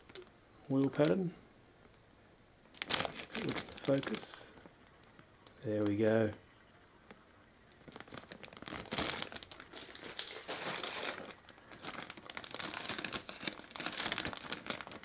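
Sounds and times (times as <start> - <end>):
plastic bags crinkling: 0.0 - 1.3, 2.7 - 5.0, 7.7 - 15.0.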